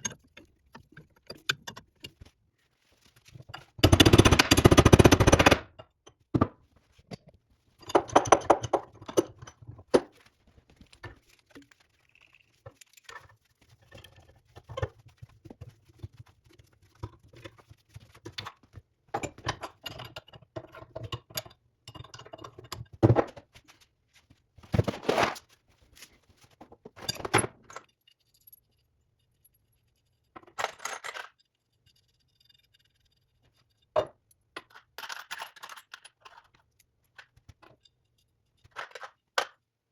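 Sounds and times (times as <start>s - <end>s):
metal tools clinking and scraping: 34.0s - 38.0s.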